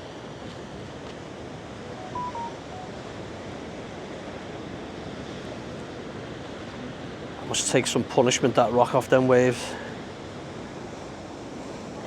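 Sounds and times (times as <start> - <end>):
faint beeping tones: 2.0 - 2.9.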